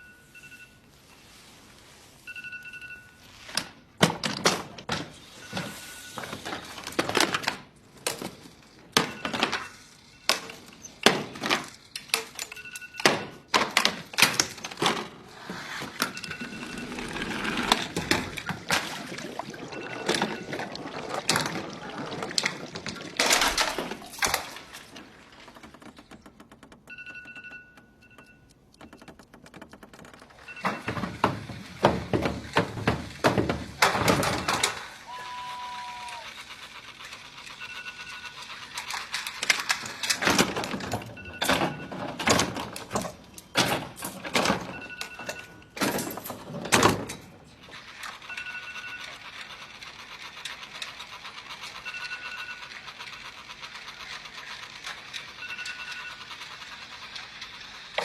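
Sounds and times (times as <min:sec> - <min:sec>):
phone alarm beeping: 0:00.0 - 0:01.5, 0:02.2 - 0:03.6, 0:05.2 - 0:06.8, 0:08.9 - 0:11.0, 0:12.4 - 0:13.5, 0:15.8 - 0:22.1, 0:26.1 - 0:29.6, 0:30.3 - 0:31.5, 0:34.0 - 0:34.8, 0:37.4 - 0:38.6, 0:41.2 - 0:42.4, 0:44.4 - 0:45.8, 0:48.2 - 0:49.6, 0:51.7 - 0:53.2, 0:55.3 - 0:56.4.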